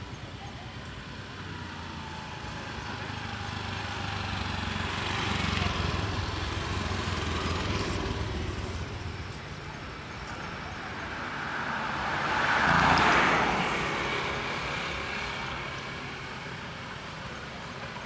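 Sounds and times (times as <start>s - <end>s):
motor vehicle engine running: 0.0s - 12.1s.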